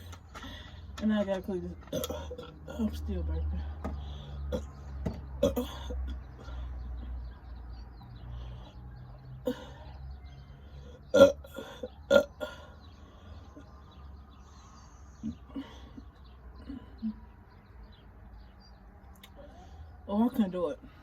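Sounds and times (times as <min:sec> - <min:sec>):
woman burping: 0:01.9 - 0:02.9, 0:05.4 - 0:06.0, 0:11.1 - 0:12.6.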